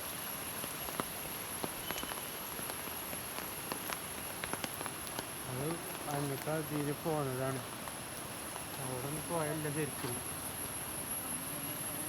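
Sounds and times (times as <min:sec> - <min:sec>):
rain hiss: 0:00.0 - 0:12.0.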